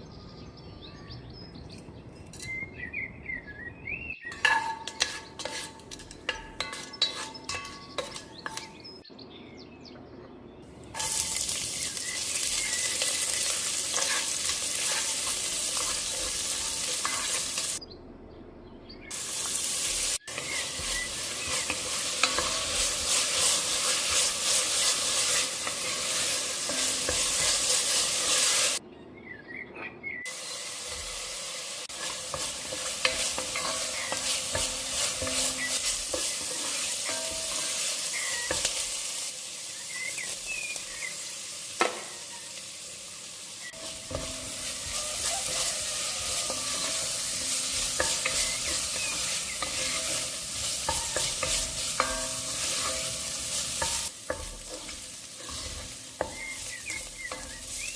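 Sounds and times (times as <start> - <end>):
food sizzling in hot oil: 10.8 - 17.8, 19.1 - 28.8, 30.3 - 57.9.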